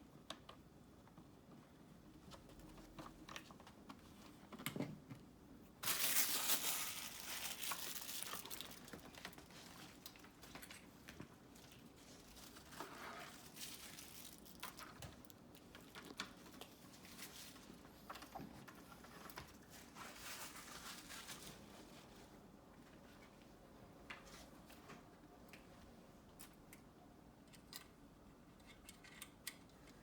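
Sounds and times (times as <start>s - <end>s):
hands crinkling and rustling: 5.8s - 25.8s.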